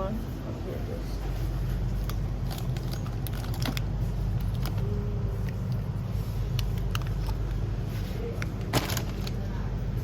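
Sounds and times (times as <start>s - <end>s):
snack packets crinkling: 2.0s - 9.5s.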